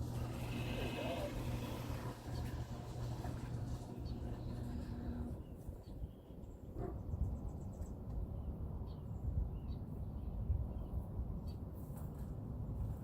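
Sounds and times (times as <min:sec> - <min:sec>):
low uneven rumble: 0:00.0 - 0:05.5.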